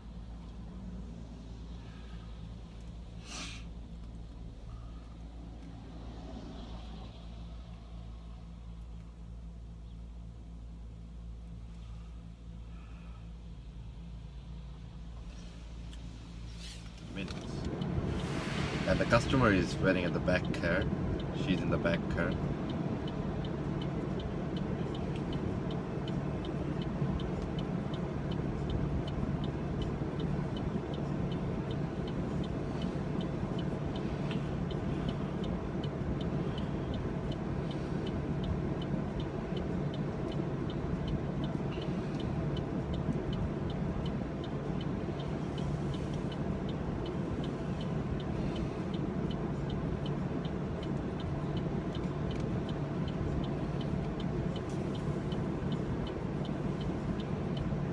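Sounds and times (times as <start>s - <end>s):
car cabin hum: 0.0s - 57.9s
light ticking: 19.3s - 57.9s.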